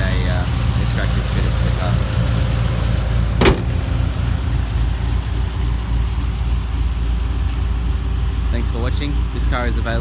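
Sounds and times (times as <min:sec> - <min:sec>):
vee eight engine idling: 0:00.0 - 0:10.0
sharp knock: 0:03.4 - 0:03.7.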